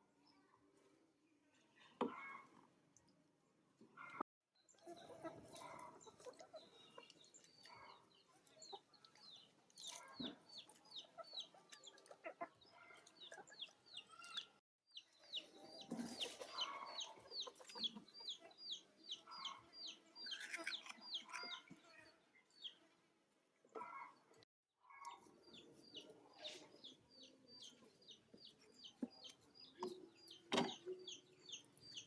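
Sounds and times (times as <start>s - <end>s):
chickens clucking: 4.0s - 21.9s
chicks peeping: 4.8s - 21.8s, 25.0s - 32.0s.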